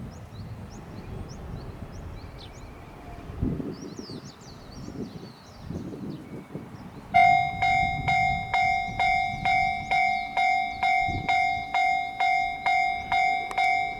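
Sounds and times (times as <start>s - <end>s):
level crossing warning bell: 7.2s - 13.9s.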